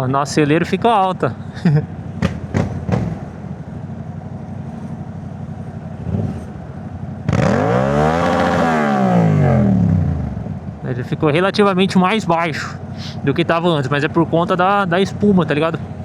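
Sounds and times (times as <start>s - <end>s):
motorcycle engine revving: 2.0s - 10.8s.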